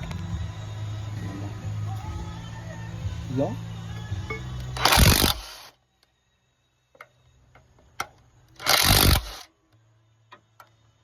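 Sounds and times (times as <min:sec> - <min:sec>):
power tool bursts: 0:04.8 - 0:05.7, 0:08.6 - 0:09.5.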